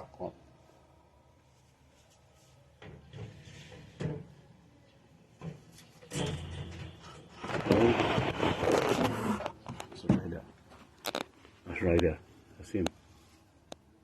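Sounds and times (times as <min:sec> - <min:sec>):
knocks and clatters: 0:05.4 - 0:11.3.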